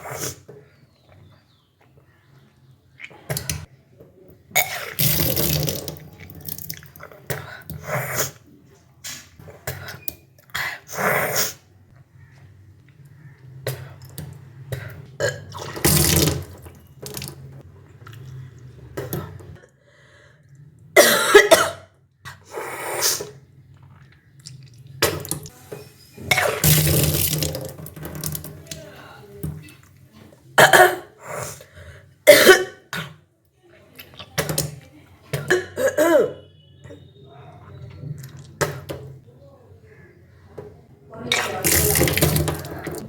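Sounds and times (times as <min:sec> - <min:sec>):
person retching and vomiting: 0:04.5 - 0:08.5, 0:15.0 - 0:16.7, 0:21.0 - 0:22.4, 0:26.2 - 0:28.5, 0:30.6 - 0:33.2, 0:35.4 - 0:36.5, 0:41.3 - 0:43.0
coughing and throat clearing: 0:04.6 - 0:05.1, 0:15.2 - 0:15.6, 0:21.0 - 0:22.0, 0:26.3 - 0:26.6, 0:30.6 - 0:31.2, 0:32.2 - 0:33.2, 0:35.4 - 0:36.4
water splashing: 0:41.4 - 0:43.0.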